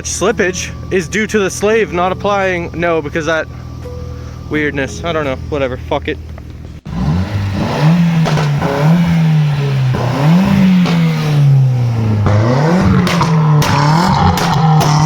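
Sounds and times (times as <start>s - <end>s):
car engine revving: 0.0s - 15.0s
sharp cracks: 6.3s - 15.0s.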